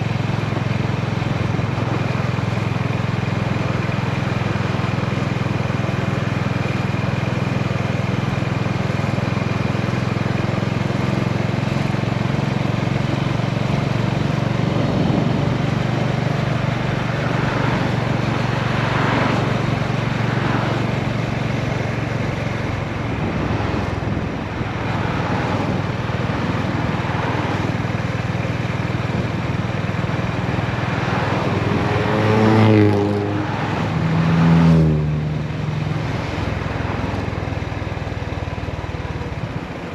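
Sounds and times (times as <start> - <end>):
motorcycle engine running: 0.0 - 39.9
wind rushing: 22.8 - 27.6.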